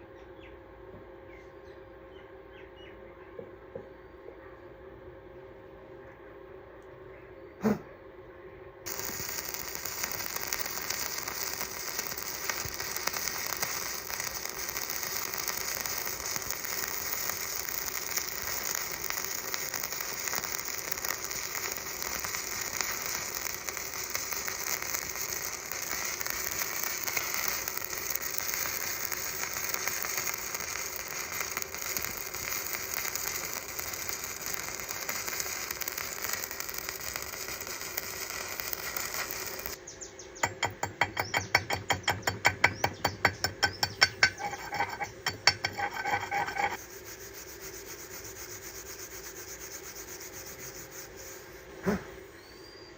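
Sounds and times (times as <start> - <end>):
welding arc crackling: 8.9 - 39.8, 40.4 - 51.4.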